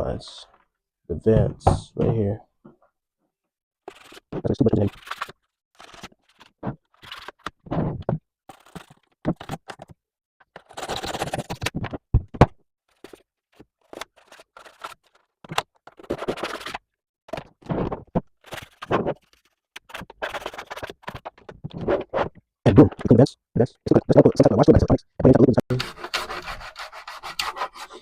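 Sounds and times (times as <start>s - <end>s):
toothbrush scrubbing plastic: 25.7s - 28.0s.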